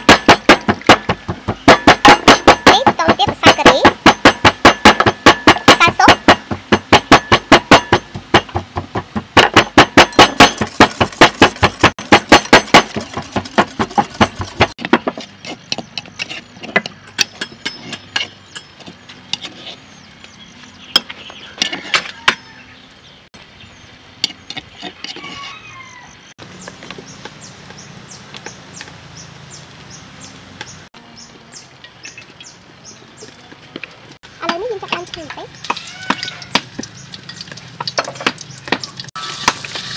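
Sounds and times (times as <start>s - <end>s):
kitchen utensil strikes: 0.0s - 8.6s, 9.4s - 13.0s.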